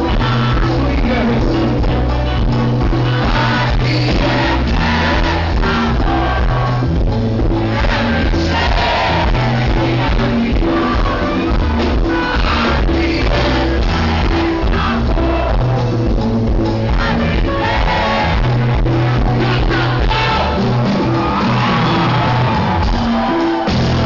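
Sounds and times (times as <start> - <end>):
live band music: 0.0 - 24.0
repeating bass line: 0.0 - 24.0
person singing: 7.7 - 15.7.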